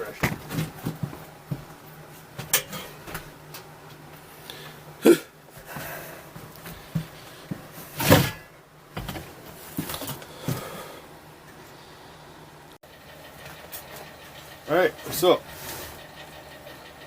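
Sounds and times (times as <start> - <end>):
knocks of things being handled: 0.2 - 1.8.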